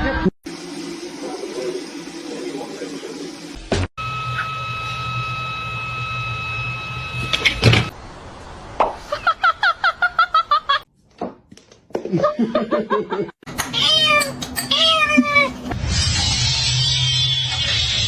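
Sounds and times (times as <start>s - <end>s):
cat meowing: 13.7s - 15.6s.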